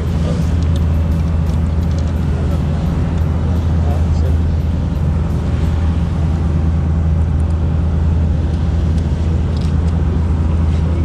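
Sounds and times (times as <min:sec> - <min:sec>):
boat engine droning: 0:00.0 - 0:11.0.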